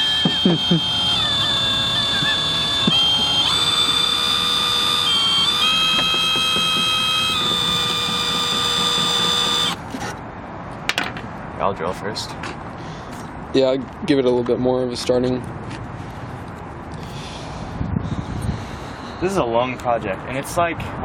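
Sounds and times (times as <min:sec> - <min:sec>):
electric drill motor whine: 0:00.0 - 0:09.8.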